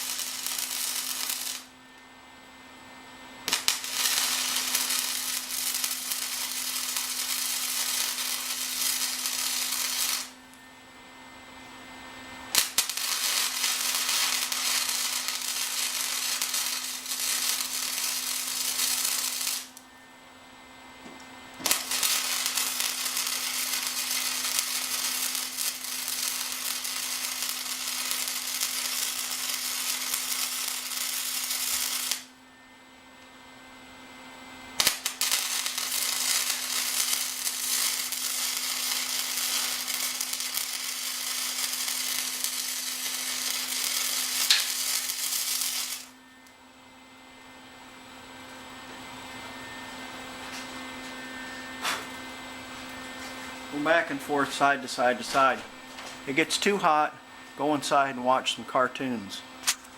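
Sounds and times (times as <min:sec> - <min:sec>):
welding arc striking snap: 0:00.0 - 0:01.8, 0:03.4 - 0:10.6, 0:12.5 - 0:19.8, 0:21.5 - 0:32.4, 0:34.7 - 0:46.6, 0:51.8 - 0:52.2, 0:53.8 - 0:59.9
arc welding crackling sizzle: 0:00.0 - 0:19.9, 0:20.8 - 0:32.4, 0:33.1 - 0:46.8, 0:47.4 - 0:59.9.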